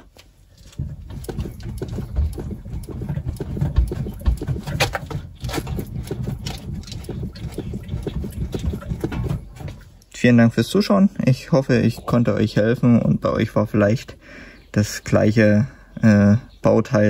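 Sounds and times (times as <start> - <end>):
car suspension knocks and clicks: 0.1 - 9.8.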